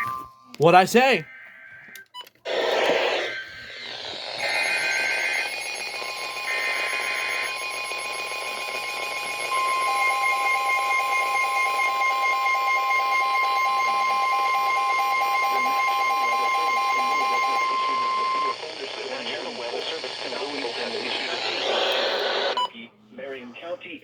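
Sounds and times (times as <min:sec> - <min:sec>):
digital header bursts: 0:02.5 - 0:07.8
two-tone attention signal: 0:09.5 - 0:18.6.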